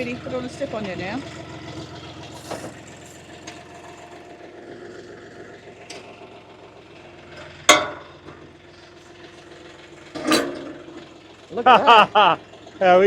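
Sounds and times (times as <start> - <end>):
tractor diesel engine idling: 0.0 - 13.0
loud metallic clank: 2.3 - 4.2, 7.4 - 8.5, 10.0 - 11.2.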